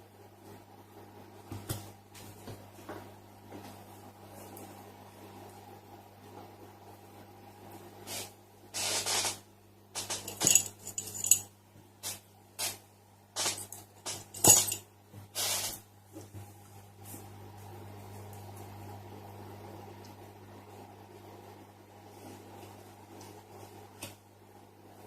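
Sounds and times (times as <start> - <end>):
low electrical hum: 0.0 - 25.0
metallic clinks of small objects: 10.0 - 11.5, 13.6 - 14.8.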